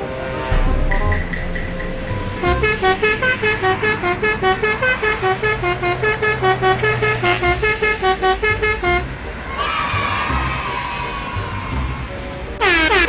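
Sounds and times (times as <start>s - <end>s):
bus horn playing a tune: 2.3s - 9.4s, 12.6s - 13.0s.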